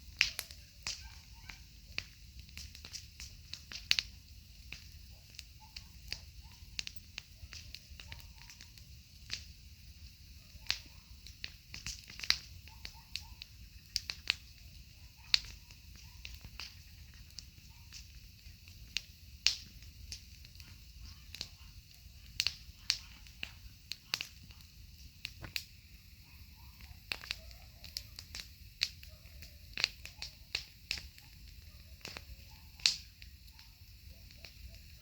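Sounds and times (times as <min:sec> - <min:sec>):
campfire crackling: 0:00.0 - 0:35.0.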